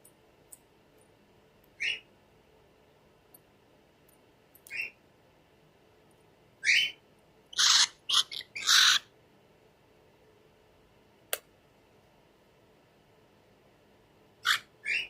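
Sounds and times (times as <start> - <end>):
cockatiel harsh calls: 6.6 - 9.1, 14.4 - 15.0.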